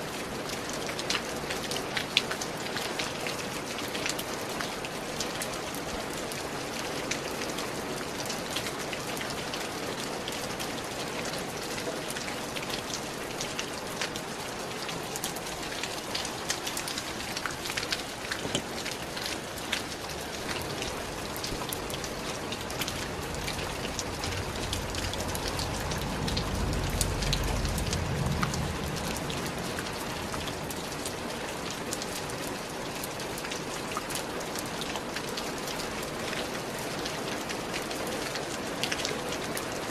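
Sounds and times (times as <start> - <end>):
rain falling: 0.0 - 39.9
low rumble: 22.0 - 31.0.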